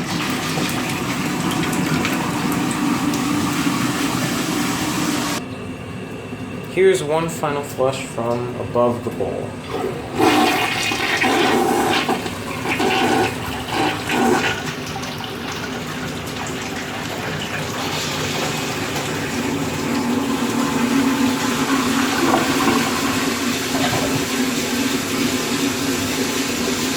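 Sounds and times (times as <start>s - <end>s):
water rushing as tank refills: 0.0s - 5.4s, 7.9s - 26.9s
toilet flushing with gurgling water: 0.0s - 26.9s.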